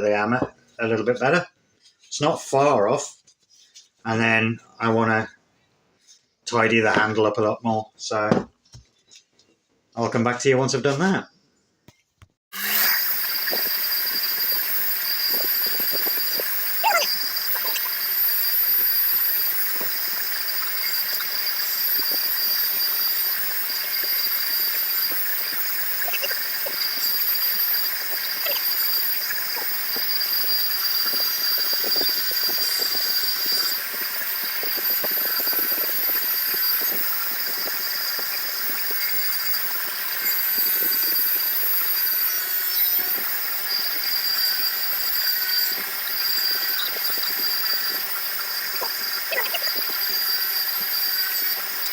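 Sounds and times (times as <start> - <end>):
power tool whining: 12.5 - 51.9.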